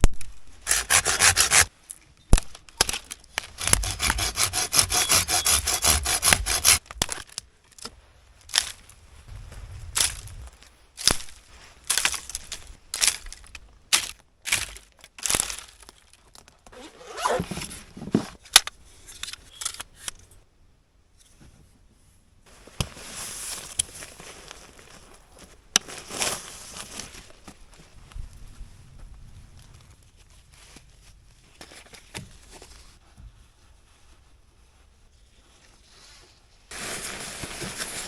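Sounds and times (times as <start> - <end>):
branches being cut with rasping strokes: 0.6 - 1.7, 2.8 - 7.4
brush crackling and rustling: 8.4 - 18.3, 22.5 - 28.6, 29.7 - 38.0.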